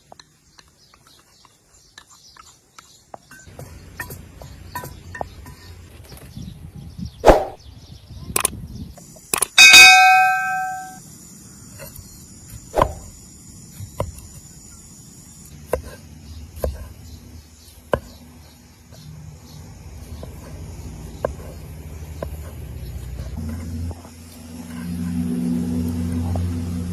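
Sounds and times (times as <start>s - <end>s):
loud ringing clang: 9.6s - 11.0s
metal cookware clattering: 9.6s - 11.0s.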